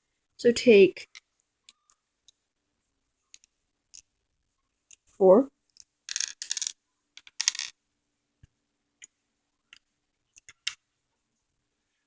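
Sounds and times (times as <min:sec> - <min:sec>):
plastic toy bricks clattering: 0:05.8 - 0:07.8.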